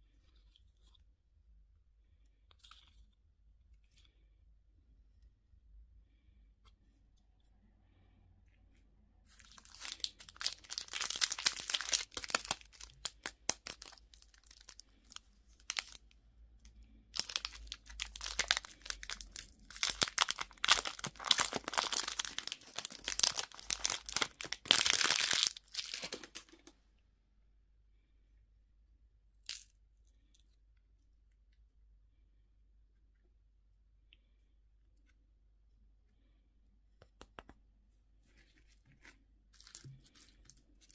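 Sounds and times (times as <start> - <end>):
candy wrapper crinkling and tearing: 9.3 - 16.2, 17.1 - 26.7, 39.0 - 40.9.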